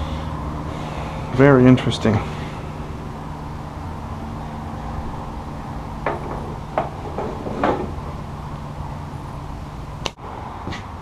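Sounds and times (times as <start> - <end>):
metal parts knocking: 6.0 - 8.2.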